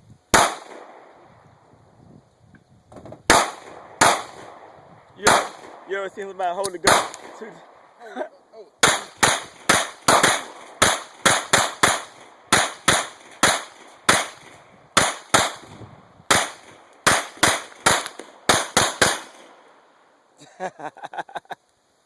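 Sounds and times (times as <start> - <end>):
pistol shots: 0.3 - 1.1, 3.3 - 5.9, 6.6 - 7.8, 8.8 - 19.7.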